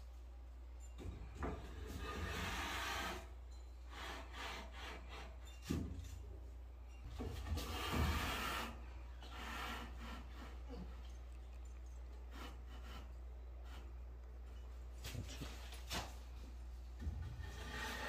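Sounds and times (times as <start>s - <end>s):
rubbing or scraping strokes: 7.4s - 16.4s, 17.2s - 18.0s.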